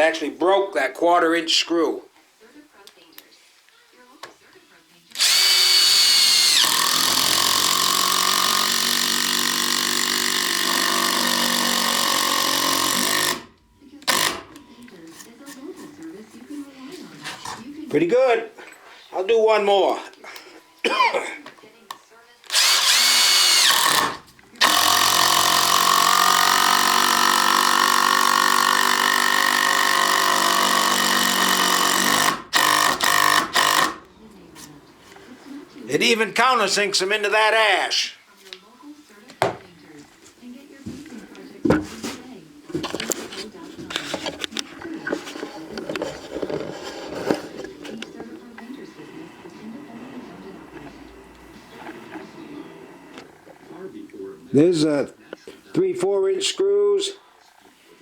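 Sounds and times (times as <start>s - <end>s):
impact driver driving screw into wood: 5.2s - 14.6s, 22.5s - 34.1s.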